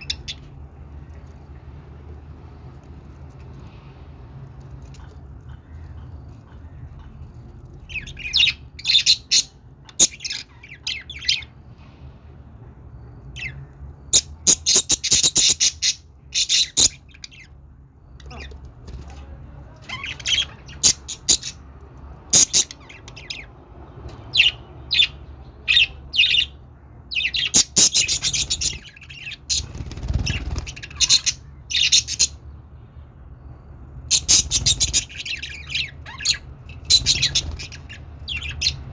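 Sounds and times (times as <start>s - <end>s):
budgerigars chirping and chattering: 0.0s - 0.6s, 4.9s - 11.5s, 13.4s - 17.6s, 18.2s - 21.6s, 22.3s - 23.5s, 24.2s - 32.4s, 34.1s - 38.9s
faint low hum: 0.0s - 38.9s.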